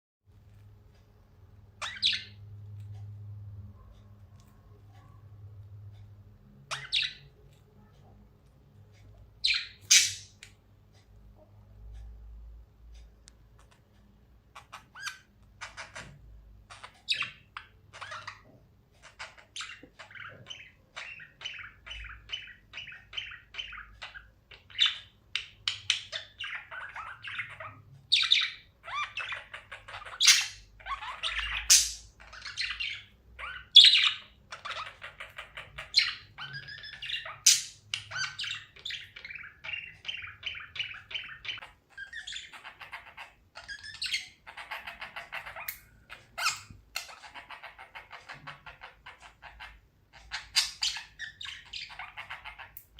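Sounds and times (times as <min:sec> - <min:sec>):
budgerigars chirping: 0:01.8 - 0:02.4, 0:06.6 - 0:07.4, 0:09.4 - 0:10.5, 0:14.5 - 0:52.9.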